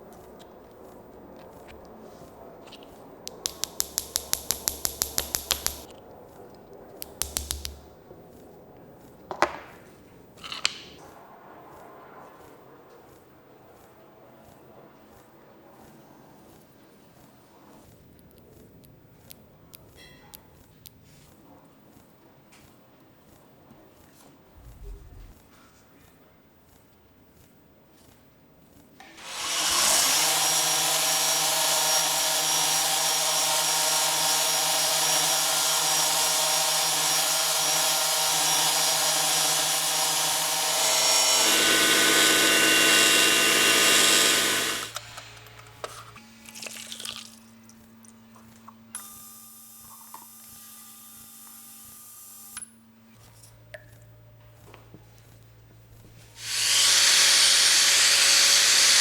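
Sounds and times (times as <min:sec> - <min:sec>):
power tool motor running: 0:03.6 - 0:05.9, 0:29.0 - 0:46.2, 0:49.0 - 0:52.7, 0:56.4 - 0:59.0
steady hum with faint tones: 0:24.5 - 0:26.9.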